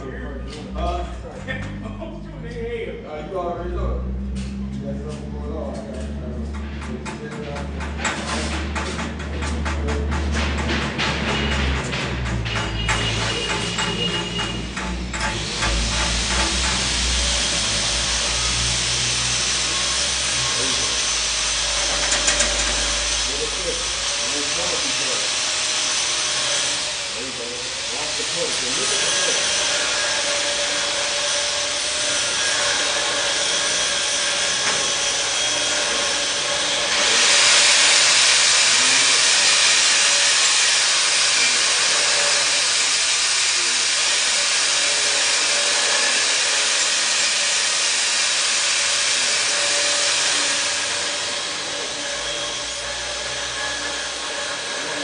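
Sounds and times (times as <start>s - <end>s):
welding arc hissing and crackling: 12.6s - 29.4s, 34.5s - 54.2s.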